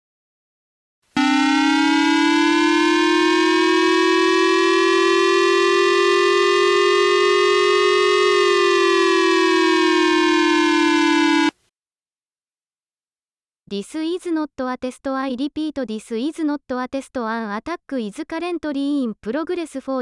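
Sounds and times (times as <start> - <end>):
civil defence siren wailing: 1.2 - 11.5.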